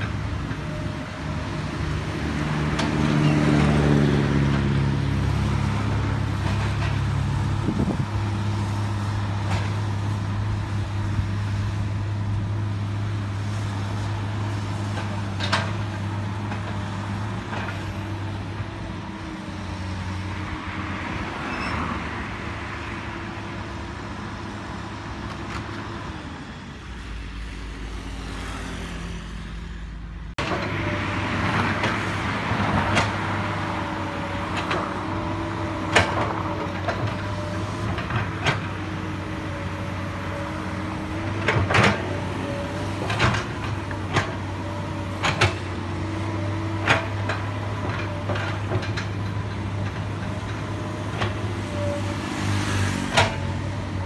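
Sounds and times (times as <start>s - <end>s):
excavator diesel engine running: 0.0s - 21.3s, 30.0s - 54.0s.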